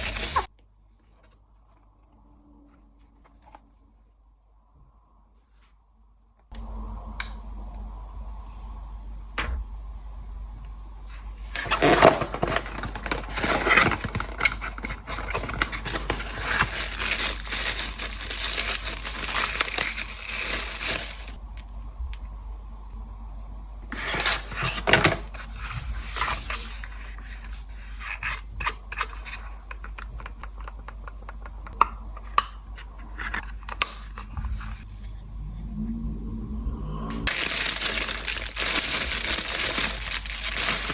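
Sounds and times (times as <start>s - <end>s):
packaging tearing and rustling: 0.0s - 0.5s, 11.5s - 21.4s, 37.3s - 40.9s
steady low hum: 12.6s - 24.6s, 31.6s - 40.9s.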